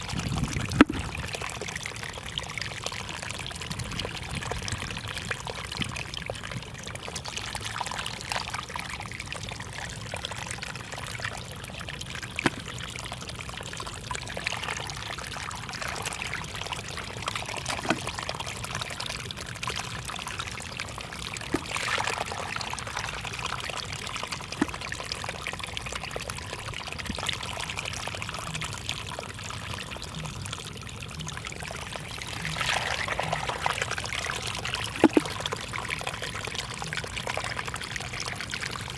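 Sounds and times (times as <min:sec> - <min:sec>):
water running and trickling: 0:00.0 - 0:38.9
small sharp splashes: 0:12.2 - 0:13.0, 0:17.5 - 0:18.7, 0:21.4 - 0:23.7, 0:32.2 - 0:35.7.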